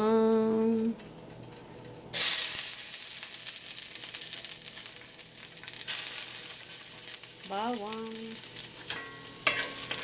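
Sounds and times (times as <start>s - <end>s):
garlic sizzling in hot pan: 2.1s - 10.0s.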